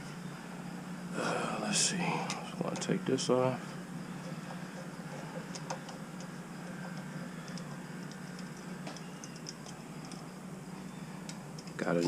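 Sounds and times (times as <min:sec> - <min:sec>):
steady low hum: 0:00.0 - 0:12.0
faint clicks and taps of tools: 0:05.4 - 0:10.2.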